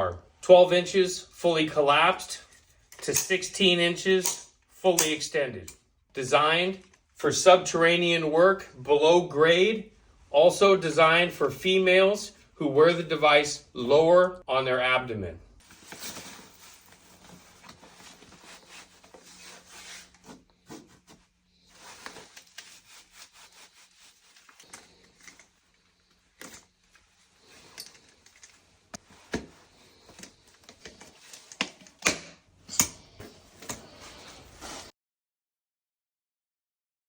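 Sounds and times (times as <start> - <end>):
rubbing and scraping handling noise: 15.6 - 34.9.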